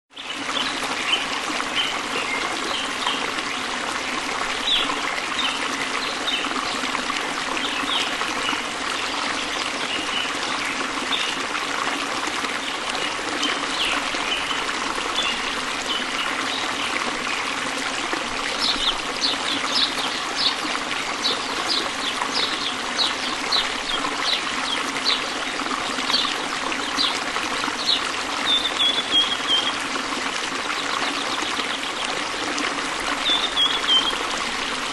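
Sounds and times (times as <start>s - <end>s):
stream trickling: 0.1s - 34.9s
birds chirping: 27.8s - 29.8s, 33.2s - 34.2s.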